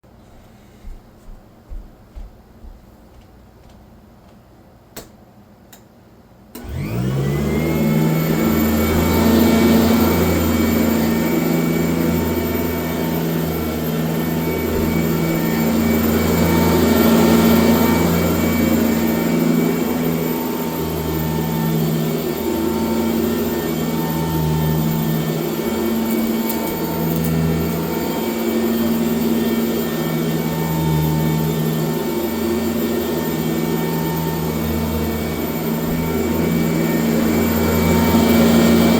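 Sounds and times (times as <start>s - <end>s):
vacuum cleaner motor whining: 6.6s - 38.9s.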